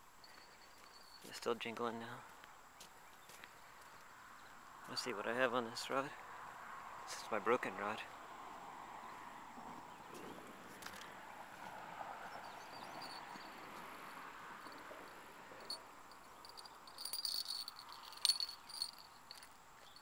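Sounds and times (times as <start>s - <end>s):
insect chorus: 0.1s - 20.0s
small bell jingling: 0.2s - 1.6s, 12.4s - 20.0s.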